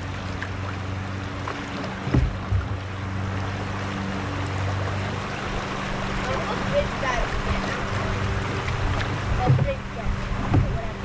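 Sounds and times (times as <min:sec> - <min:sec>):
river water rushing: 0:00.0 - 0:11.0
short low knocks: 0:02.0 - 0:03.0, 0:08.7 - 0:11.0.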